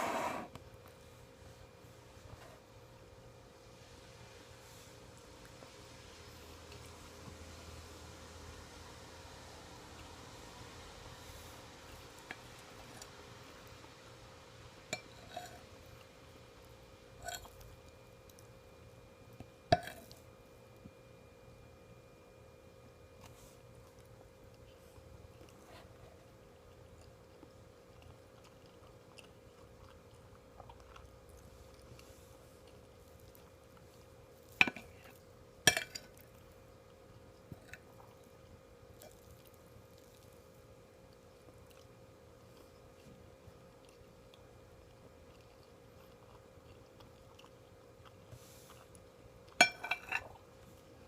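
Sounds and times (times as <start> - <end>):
faint steady hum: 0.0 - 51.0
cutlery clinking on a plate: 35.7 - 36.1, 49.6 - 50.3.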